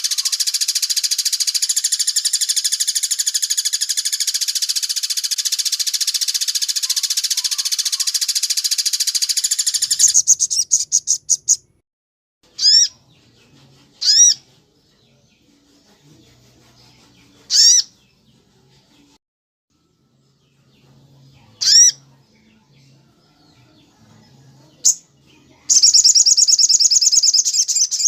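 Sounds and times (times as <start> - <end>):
bird fast trill: 0.0 - 11.7, 12.5 - 13.0, 14.0 - 14.4, 17.5 - 17.9, 21.6 - 22.0, 25.7 - 28.0.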